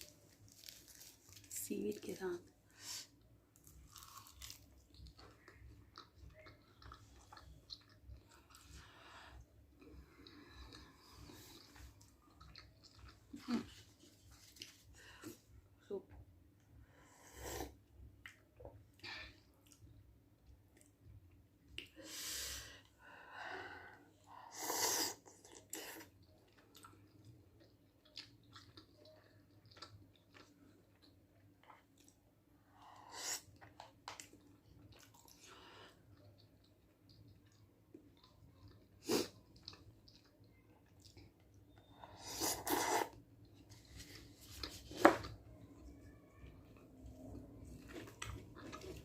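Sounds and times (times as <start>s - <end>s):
person chewing wetly: 3.2s - 15.5s, 25.1s - 49.0s.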